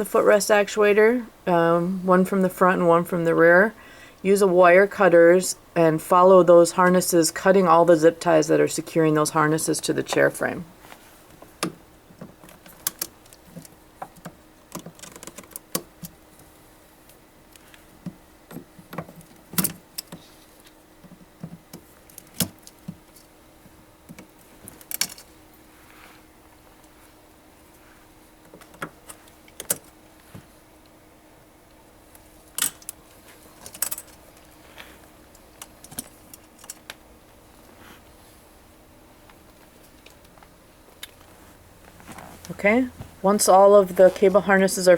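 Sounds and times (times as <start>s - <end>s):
faint steady hum: 0.0s - 44.9s
cables being handled: 10.1s - 31.0s, 31.7s - 38.2s, 39.2s - 44.5s.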